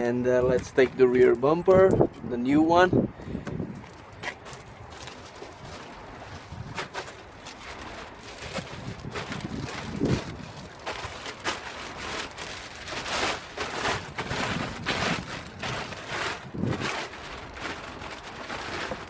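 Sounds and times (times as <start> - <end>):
wind buffeting microphone: 0.1 - 7.1, 7.8 - 19.0.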